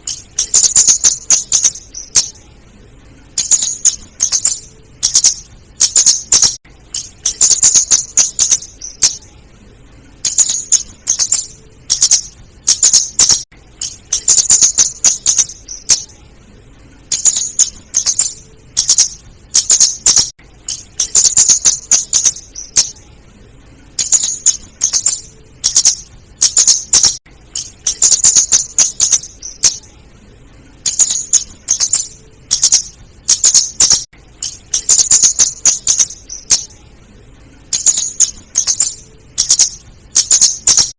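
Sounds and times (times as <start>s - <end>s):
bird high thin ticking calls: 0.0s - 2.4s, 3.4s - 9.2s, 10.2s - 16.1s, 17.1s - 23.0s, 24.0s - 29.8s, 30.8s - 36.7s, 37.7s - 40.9s.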